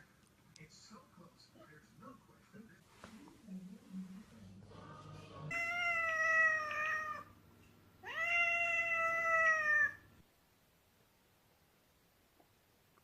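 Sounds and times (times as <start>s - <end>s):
cat meowing: 5.5s - 7.4s, 8.0s - 10.1s.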